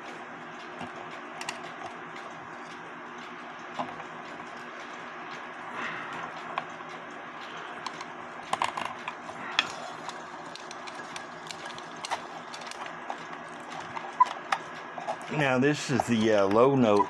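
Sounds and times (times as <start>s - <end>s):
steady low hum: 0.0s - 17.0s
small clicks and taps: 7.4s - 9.2s.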